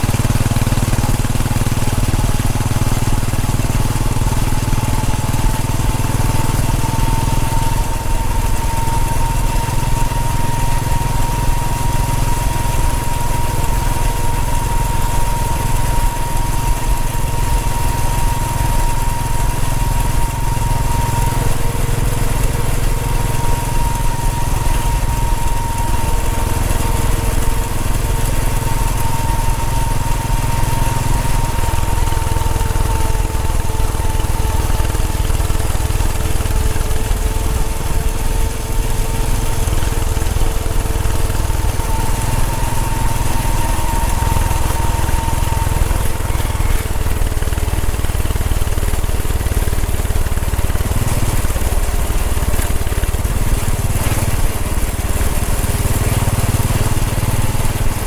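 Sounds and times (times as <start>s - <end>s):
motorcycle engine running: 0.0s - 58.0s
thin high tone: 6.2s - 48.2s.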